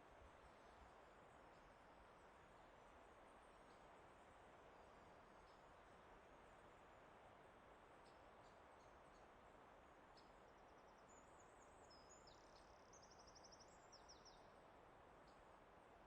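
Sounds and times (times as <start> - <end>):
soft steady hiss: 0.0 - 16.0
songbird chirping and trilling: 10.2 - 14.5.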